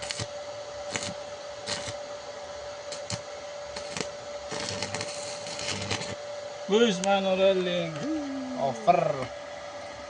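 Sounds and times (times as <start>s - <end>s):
welding arc crackles and pops: 0.0s - 2.0s, 2.9s - 6.2s
welding arc sizzling: 0.0s - 2.0s, 2.9s - 7.9s
welder whine: 0.0s - 10.0s.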